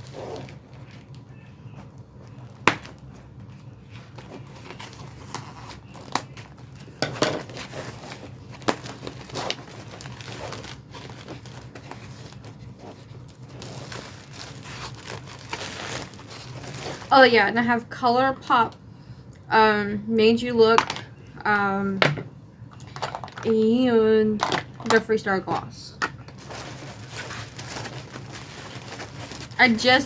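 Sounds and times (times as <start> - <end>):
packaging crinkling and rustling: 0.0 - 17.4, 26.0 - 30.0.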